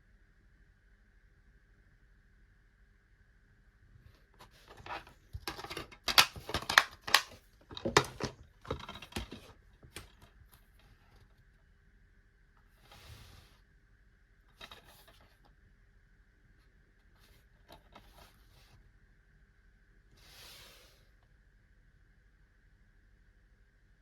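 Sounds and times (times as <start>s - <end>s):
packaging clicks and snaps: 4.7s - 10.3s
soft rustle: 12.6s - 13.7s.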